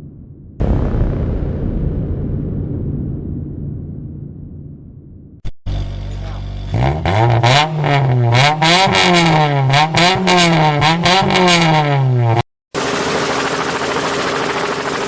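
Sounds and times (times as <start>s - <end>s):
engine idling and revving: 5.7s - 15.0s.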